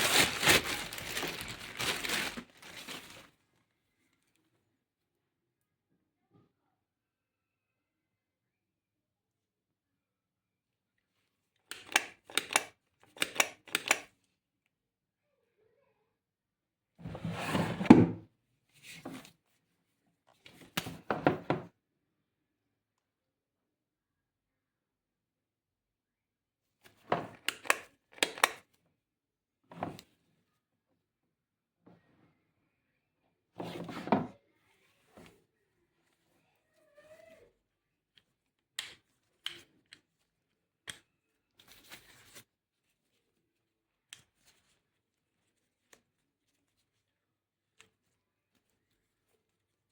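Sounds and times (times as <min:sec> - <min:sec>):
packaging rustling and clicks: 0:00.0 - 0:03.4.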